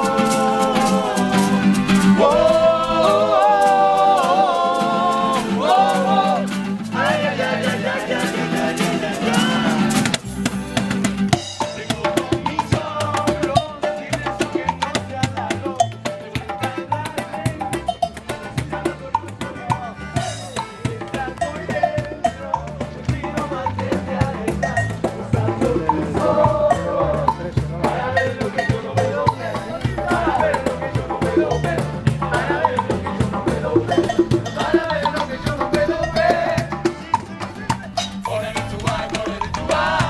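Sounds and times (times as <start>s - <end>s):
person singing: 0.0s - 10.2s, 11.6s - 40.0s
latin percussion rhythm: 0.0s - 40.0s.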